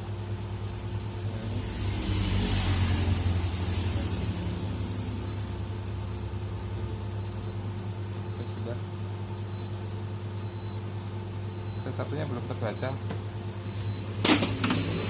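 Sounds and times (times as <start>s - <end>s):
copier machine hum: 0.0s - 15.0s
rushing swell: 1.2s - 5.6s.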